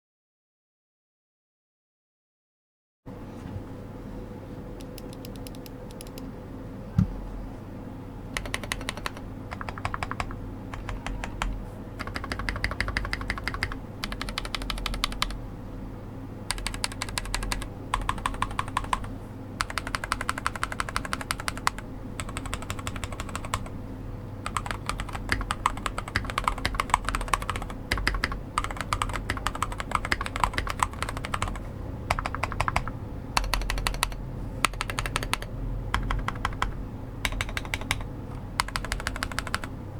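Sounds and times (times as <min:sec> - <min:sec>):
mechanical keyboard typing: 0:04.8 - 0:06.2, 0:08.4 - 0:15.4, 0:16.5 - 0:23.7, 0:24.4 - 0:39.7
loud knock: 0:07.0 - 0:07.2.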